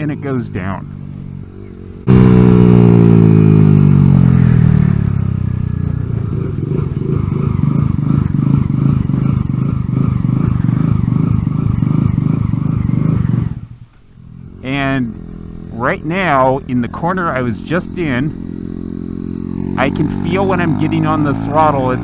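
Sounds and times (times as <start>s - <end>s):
motorcycle engine running: 0.0s - 22.0s.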